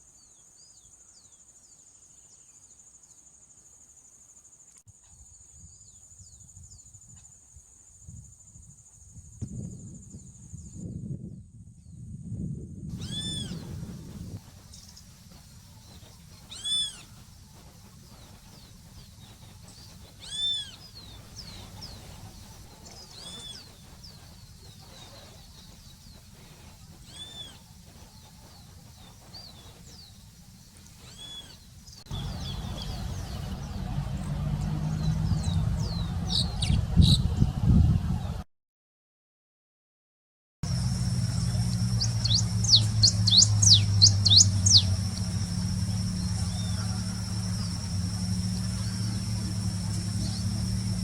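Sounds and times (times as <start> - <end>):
bird mewing call: 12.9 - 13.9, 15.8 - 17.3, 18.2 - 25.8, 26.4 - 30.0, 31.0 - 31.6, 40.7 - 51.0
quick high chirps: 12.9 - 30.1, 40.7 - 51.0
loud low rumble: 32.1 - 38.4, 40.6 - 51.0.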